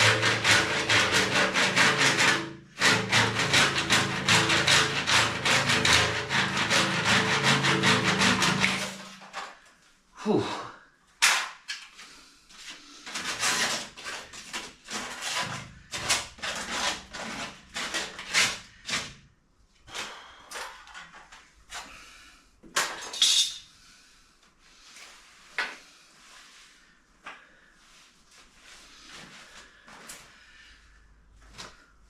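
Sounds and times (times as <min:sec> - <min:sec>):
hard objects scraping and clattering: 0:00.0 - 0:09.7, 0:12.8 - 0:22.0.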